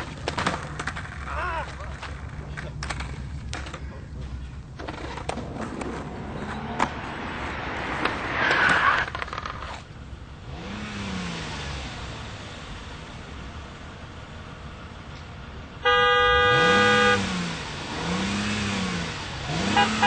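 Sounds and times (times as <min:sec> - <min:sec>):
car driving on road: 0:00.0 - 0:20.0.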